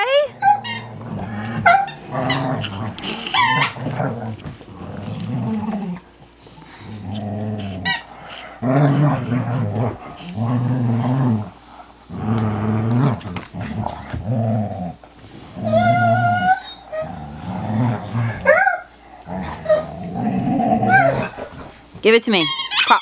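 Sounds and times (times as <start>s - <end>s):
dog growling: 0.0s - 21.8s
dog yipping: 20.9s - 23.0s.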